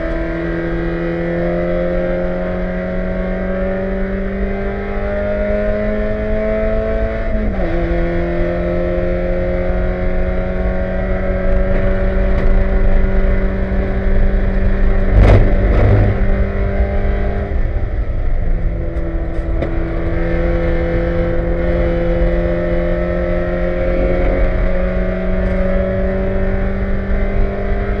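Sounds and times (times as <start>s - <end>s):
race car engine revving: 0.0s - 28.0s
suspension clanking: 11.0s - 22.3s
loud clunk: 15.1s - 16.4s.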